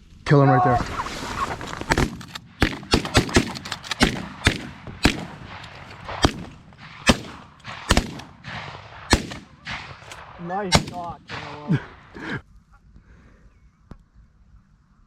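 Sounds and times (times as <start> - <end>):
shotgun shots: 1.8 - 12.2.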